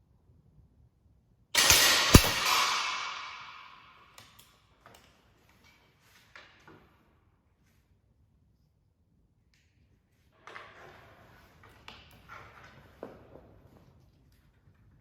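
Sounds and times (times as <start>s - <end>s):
sharp click: 1.6s - 3.9s
air rifle shot: 1.6s - 4.0s.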